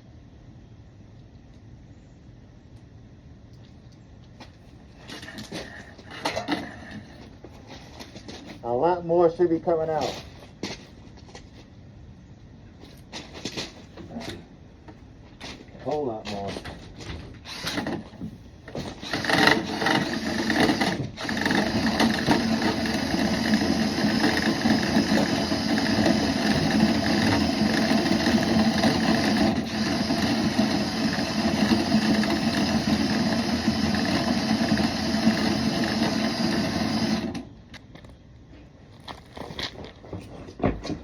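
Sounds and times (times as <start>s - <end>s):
rotary brush buzzing in duct: 17.4s - 37.5s.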